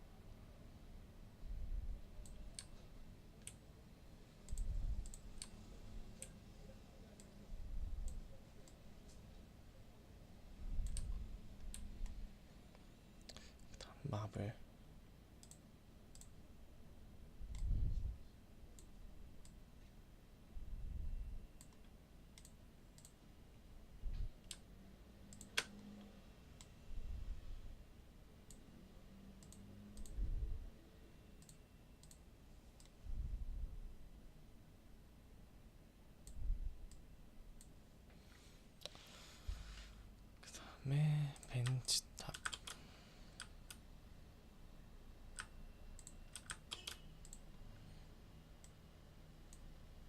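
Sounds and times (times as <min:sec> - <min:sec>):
computer mouse clicking: 0:02.2 - 0:03.6, 0:04.5 - 0:05.6, 0:07.9 - 0:09.2, 0:10.8 - 0:12.2, 0:15.4 - 0:16.4, 0:17.5 - 0:17.8, 0:21.6 - 0:23.2, 0:24.4 - 0:26.8, 0:28.4 - 0:28.6, 0:29.4 - 0:30.2, 0:31.4 - 0:32.2, 0:32.8 - 0:33.0, 0:41.4 - 0:42.8, 0:43.4 - 0:43.8, 0:45.3 - 0:47.6, 0:49.5 - 0:49.7.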